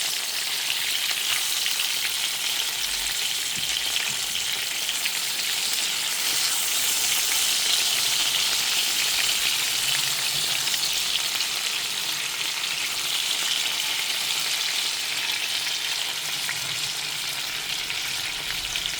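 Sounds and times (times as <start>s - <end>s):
fish sizzling in hot oil: 0.0s - 18.9s.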